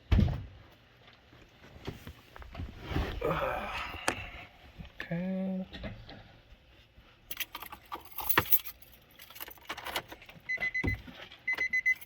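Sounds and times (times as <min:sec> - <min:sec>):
keys jangling and clicking: 0:07.3 - 0:10.4
car warning chime beeping: 0:10.5 - 0:12.0.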